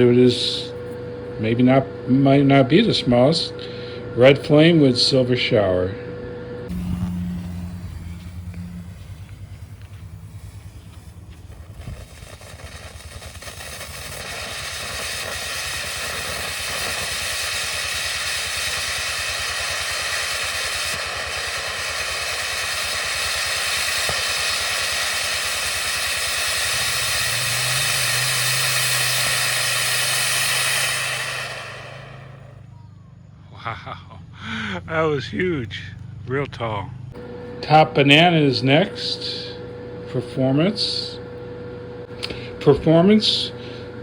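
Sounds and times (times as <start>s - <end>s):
firework fountain hissing: 6.7s - 32.7s.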